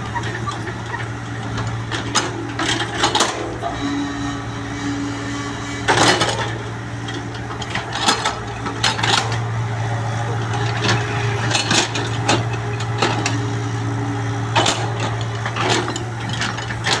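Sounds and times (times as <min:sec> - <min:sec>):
bucket and arm clanking: 0:00.0 - 0:03.8, 0:10.2 - 0:13.5, 0:14.5 - 0:17.0
excavator diesel engine running: 0:00.0 - 0:17.0.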